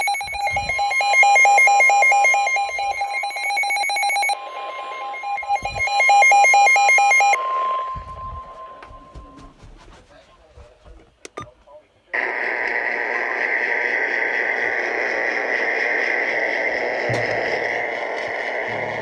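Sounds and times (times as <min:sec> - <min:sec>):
rapid electronic alert beeps: 0:00.0 - 0:08.8
steady alert tone: 0:00.0 - 0:09.4.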